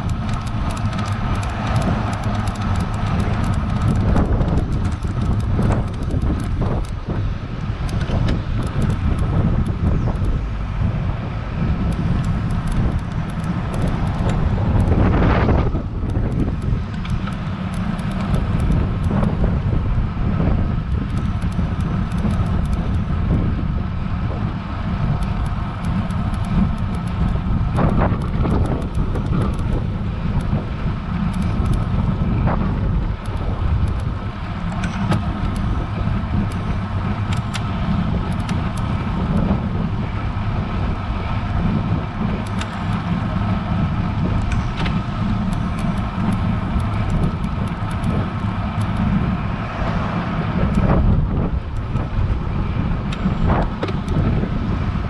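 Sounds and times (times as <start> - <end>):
road noise: 0.0 - 55.0
wind rumbling on microphone: 0.0 - 55.0
light ticks: 31.2 - 31.9, 42.4 - 43.1.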